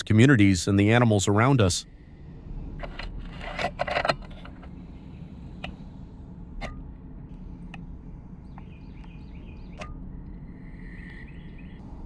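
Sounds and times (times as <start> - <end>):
low background rumble: 0.0 - 12.0.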